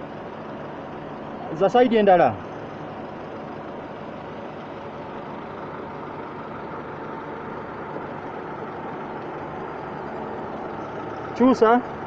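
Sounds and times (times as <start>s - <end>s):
car engine running: 0.0s - 12.0s.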